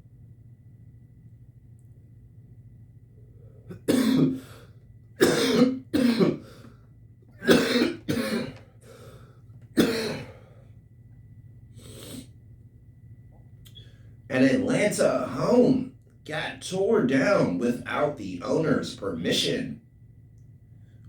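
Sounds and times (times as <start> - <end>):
man coughing: 3.7 - 4.4, 5.2 - 6.5, 7.4 - 8.6, 9.8 - 10.4.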